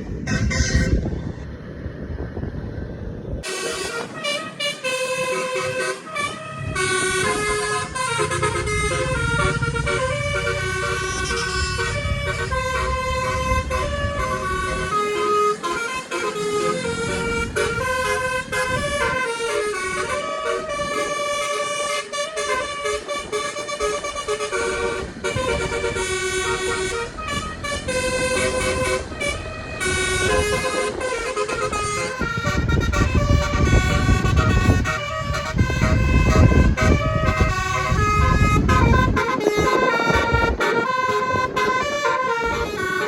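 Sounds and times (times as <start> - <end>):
musical bus horn melodies: 0.0 - 1.2, 3.4 - 43.0
bus engine running: 0.0 - 43.0.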